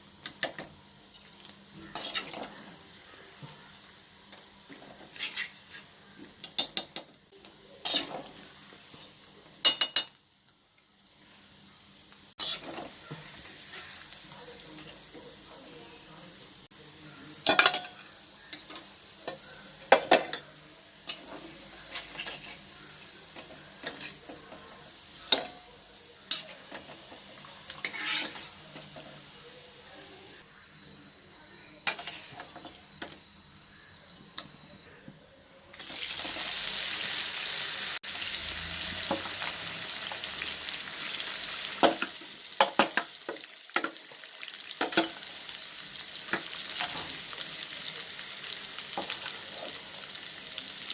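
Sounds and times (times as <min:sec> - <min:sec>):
chicken sizzling in a pan: 0:00.0 - 0:50.9
spoon scraping and knocking pan: 0:00.2 - 0:02.7, 0:07.8 - 0:08.5, 0:12.4 - 0:14.1, 0:17.4 - 0:20.5, 0:21.1 - 0:25.7, 0:26.3 - 0:29.2, 0:41.8 - 0:44.1.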